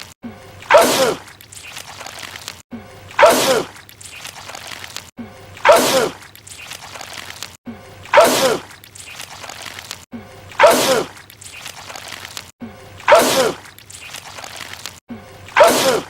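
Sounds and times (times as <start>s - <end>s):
man sneezing: 3.2s - 3.7s, 10.6s - 11.1s, 13.1s - 13.6s, 15.6s - 16.0s.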